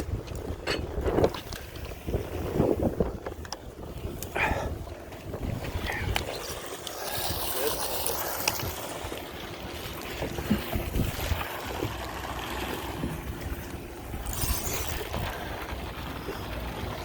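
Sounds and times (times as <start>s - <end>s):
wind buffeting microphone: 0.0s - 7.6s, 8.4s - 12.1s.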